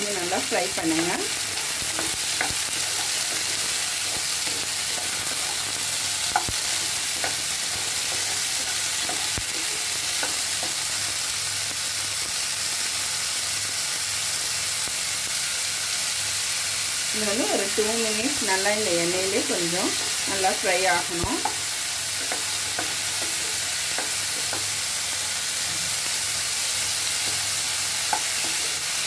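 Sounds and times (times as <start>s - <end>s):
spoon stirring against pan: 0.0s - 11.6s, 17.5s - 29.0s
vegetables sizzling in oil: 0.0s - 29.0s.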